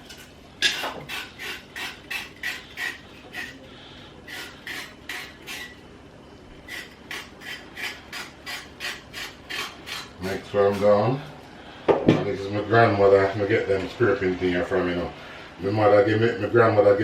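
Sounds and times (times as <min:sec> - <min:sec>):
blade scraping carrot: 0:00.0 - 0:05.8, 0:06.6 - 0:11.2.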